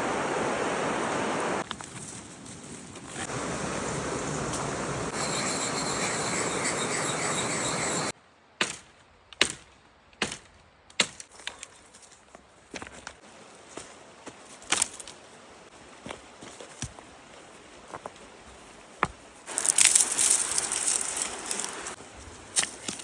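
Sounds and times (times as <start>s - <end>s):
steady rushing noise: 3.2s - 8.1s
sharp irregular knocks and snaps: 8.6s - 11.7s.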